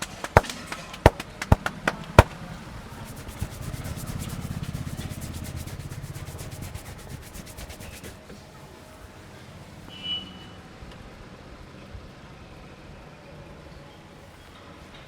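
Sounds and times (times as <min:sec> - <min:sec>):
hand smacks: 0:00.0 - 0:02.5
hands rubbing scalp and hair: 0:00.0 - 0:08.2.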